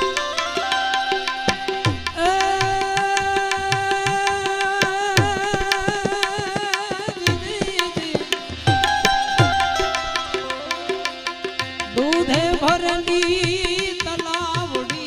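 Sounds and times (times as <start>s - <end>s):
tabla rhythm: 0.0s - 15.0s.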